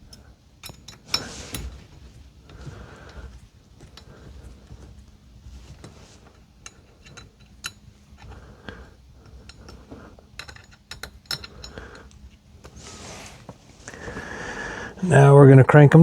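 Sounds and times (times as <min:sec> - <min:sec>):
metal clinks: 0:00.0 - 0:08.4, 0:09.2 - 0:12.3.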